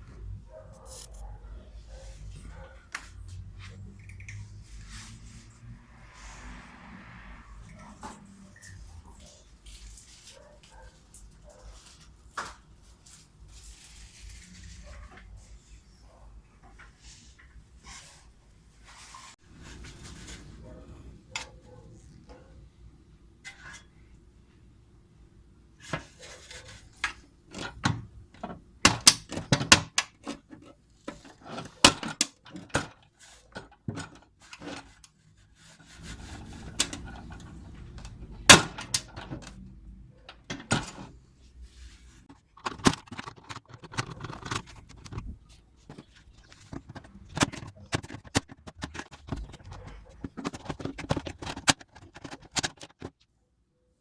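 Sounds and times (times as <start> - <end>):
scraping noise: 3.6 - 9.0, 35.7 - 38.4.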